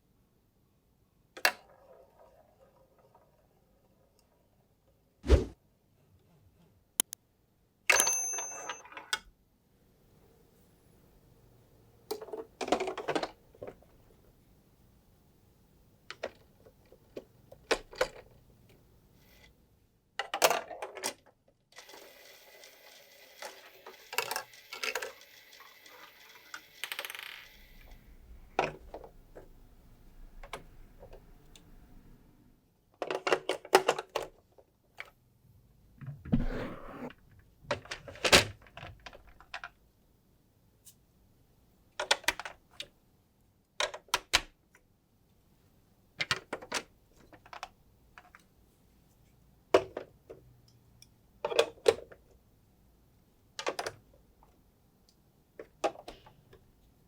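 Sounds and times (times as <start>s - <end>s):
marbles clattering down a track: 21.8s - 28.0s.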